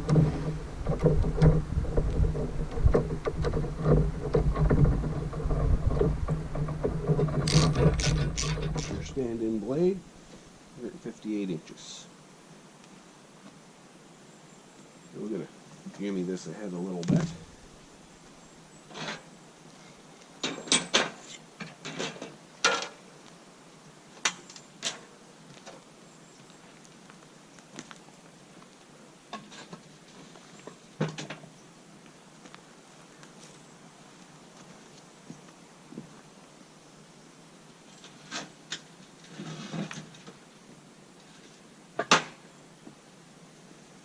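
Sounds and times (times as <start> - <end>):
scraping rustle: 0.0 - 10.7, 18.8 - 23.0, 24.3 - 31.6, 37.8 - 40.5, 41.2 - 41.7.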